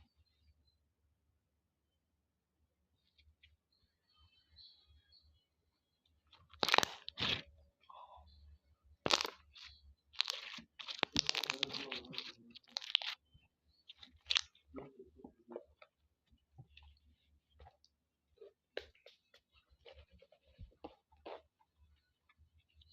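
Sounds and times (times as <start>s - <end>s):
slime crackling when squeezed: 6.4s - 7.4s, 9.0s - 13.2s.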